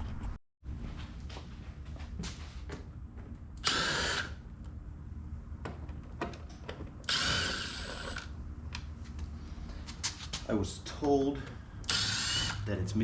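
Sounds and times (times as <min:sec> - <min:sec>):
cordless screw gun whirring: 0:03.6 - 0:04.4, 0:07.0 - 0:08.3, 0:11.8 - 0:12.7.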